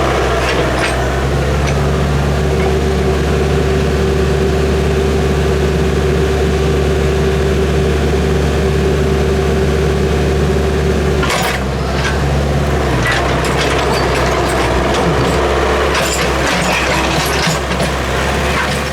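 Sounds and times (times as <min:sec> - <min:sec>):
engine whine: 0:00.0 - 0:18.9
excavator engine running: 0:00.0 - 0:18.9
metal clanks and cracks: 0:00.3 - 0:03.2, 0:11.2 - 0:18.9.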